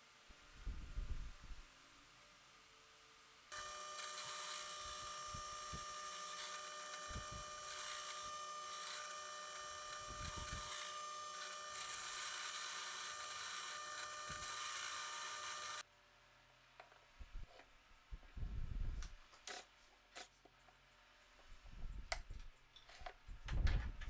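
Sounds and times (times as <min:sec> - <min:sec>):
power tool motor whining: 0:03.5 - 0:15.8.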